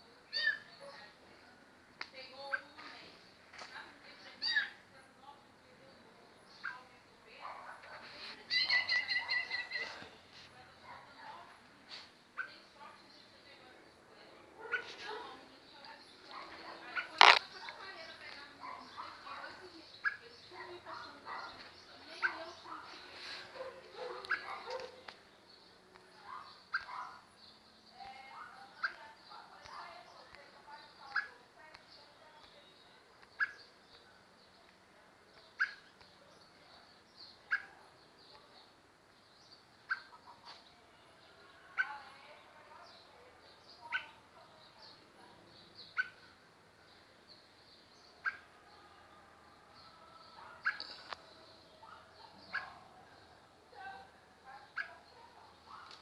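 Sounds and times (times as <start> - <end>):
faint high bird chirping: 0.0 - 1.1, 4.2 - 11.6, 14.6 - 34.7, 35.4 - 56.0
bird giving sharp calls: 16.4 - 18.2, 35.6 - 35.9, 45.8 - 46.4, 48.2 - 48.6, 50.5 - 51.2
bird's cat-like mewing call: 17.0 - 17.7.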